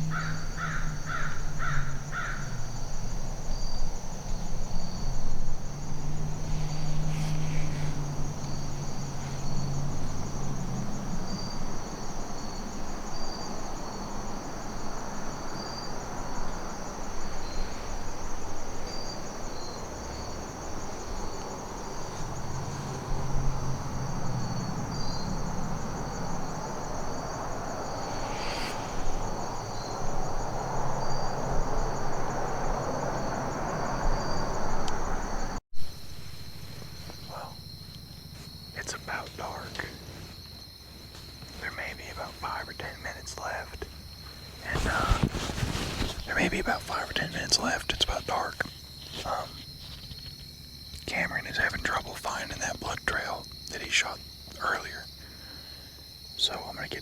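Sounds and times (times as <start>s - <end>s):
crickets trilling: 0.0s - 57.0s
low hum: 14.5s - 40.2s.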